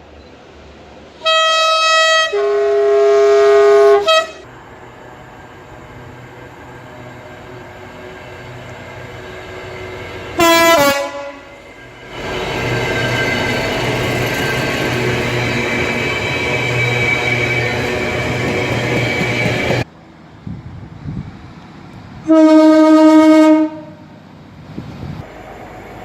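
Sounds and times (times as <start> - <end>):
train rumbling: 0.0 - 26.0
locomotive air horn: 1.2 - 4.5, 10.4 - 11.5, 22.3 - 24.0.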